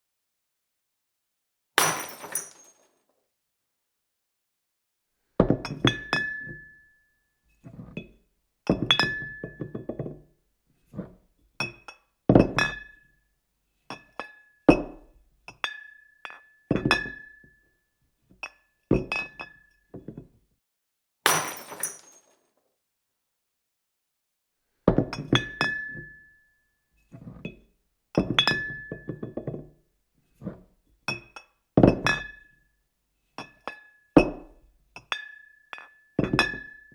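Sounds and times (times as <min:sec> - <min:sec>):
glass bottles clinking: 0:01.8 - 0:02.8, 0:08.7 - 0:10.3, 0:11.6 - 0:13.0, 0:13.9 - 0:17.4, 0:18.4 - 0:20.3, 0:21.3 - 0:22.3, 0:28.2 - 0:29.8, 0:31.1 - 0:32.4, 0:33.4 - 0:36.9
glass shattering: 0:01.8 - 0:03.0, 0:21.3 - 0:22.4.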